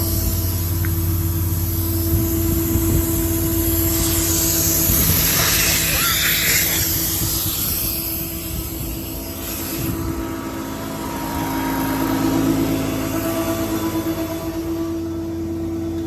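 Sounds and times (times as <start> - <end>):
hiss: 0.0 - 10.4
diesel engine running: 0.0 - 16.0
hydraulic pump whine: 0.0 - 16.0.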